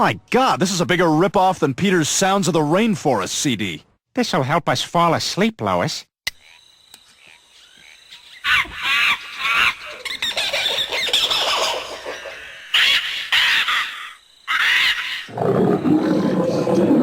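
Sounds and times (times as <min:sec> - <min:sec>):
jungle bird and animal calls: 0:06.4 - 0:17.0.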